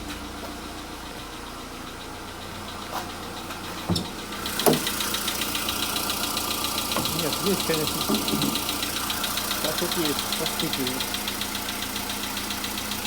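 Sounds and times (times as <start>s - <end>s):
car engine idling: 0.0s - 13.0s
engine lifter tapping: 0.4s - 13.0s
dull knocks: 3.9s - 5.2s, 6.8s - 9.2s.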